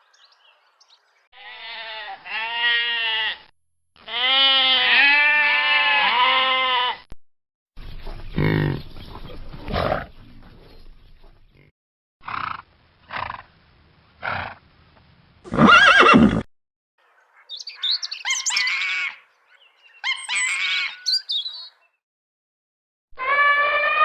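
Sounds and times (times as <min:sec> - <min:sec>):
animal calls: 0:17.3 - 0:21.8.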